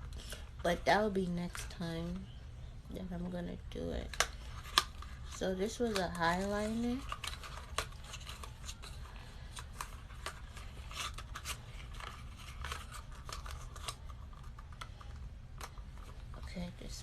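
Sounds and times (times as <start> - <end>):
packaging crinkling: 4.1 - 16.4.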